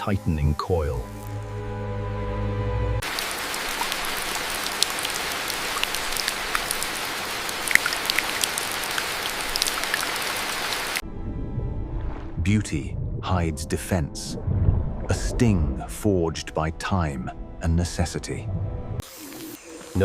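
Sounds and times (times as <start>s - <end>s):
background music chord: 0.0s - 3.0s, 12.6s - 19.0s
steady rain falling: 3.0s - 11.0s.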